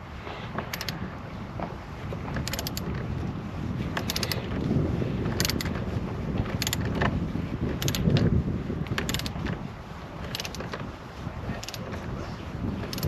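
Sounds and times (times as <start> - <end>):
socket ratchet clicking: 0.7 - 1.0, 2.4 - 2.8, 4.0 - 4.4, 5.4 - 5.7, 6.6 - 6.9, 7.8 - 8.2, 9.0 - 9.4, 10.3 - 10.6.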